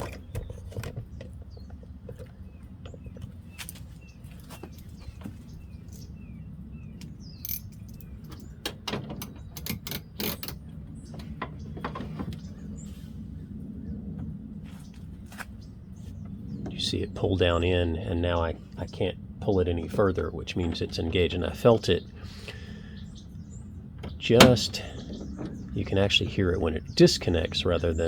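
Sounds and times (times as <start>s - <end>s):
bird chirping: 0.0s - 8.6s, 14.8s - 28.0s
steady low rumble: 0.0s - 8.6s, 9.2s - 28.0s.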